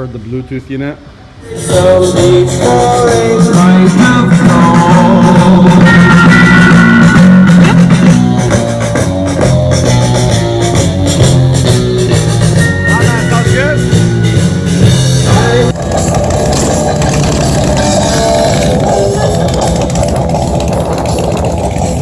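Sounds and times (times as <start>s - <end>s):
rock song with singing: 1.4s - 15.8s.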